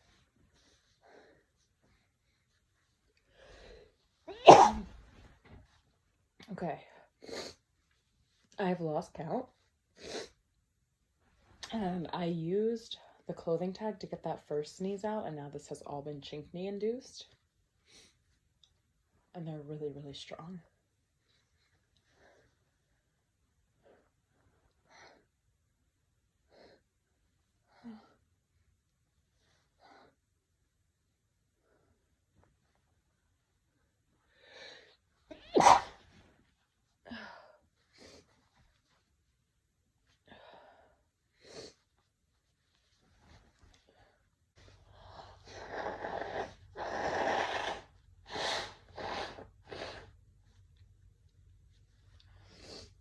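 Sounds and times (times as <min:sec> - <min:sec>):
man sneezing: 0:04.3 - 0:04.9, 0:35.5 - 0:36.0.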